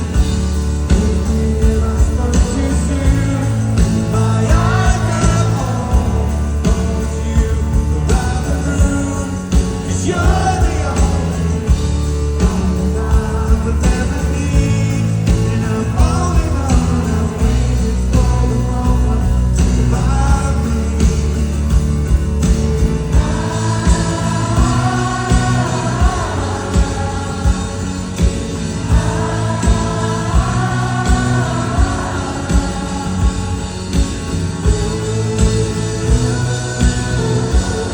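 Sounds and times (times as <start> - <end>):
live rock band playing: 0.0 - 37.9
steady drum beat: 0.0 - 37.9
person singing: 23.1 - 37.9.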